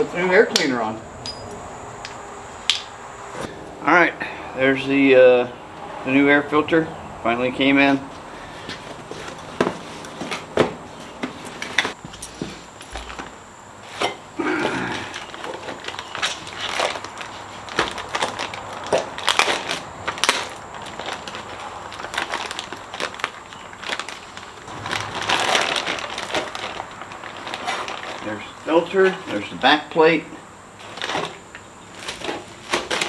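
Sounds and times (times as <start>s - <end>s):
cardboard and plastic crinkling: 8.4s - 29.6s, 30.8s - 33.0s.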